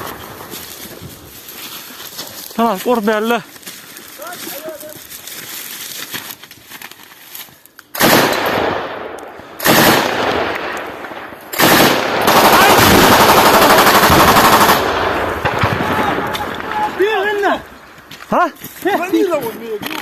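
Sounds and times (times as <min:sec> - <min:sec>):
machine-gun bursts: 0:08.0 - 0:08.7, 0:09.6 - 0:10.4, 0:11.5 - 0:16.7.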